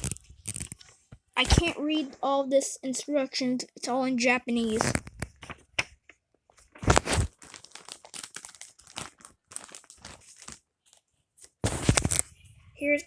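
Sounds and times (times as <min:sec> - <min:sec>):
packaging crinkling and rustling: 0:00.0 - 0:01.7, 0:04.7 - 0:12.4.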